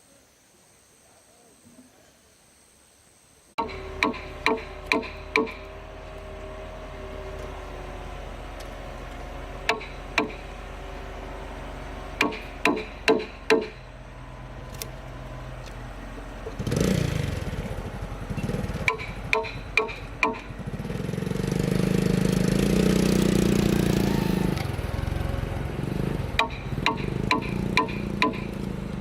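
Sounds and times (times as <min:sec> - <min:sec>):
small engine running unevenly: 0:03.6 - 0:29.0
tools knocking on timber: 0:03.7 - 0:05.6, 0:12.2 - 0:13.8.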